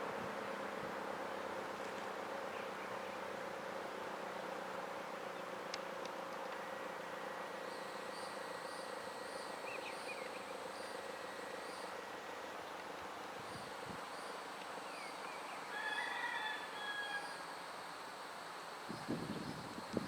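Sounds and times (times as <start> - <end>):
outdoor background noise: 0.0 - 20.0
rooster crowing: 15.7 - 17.6.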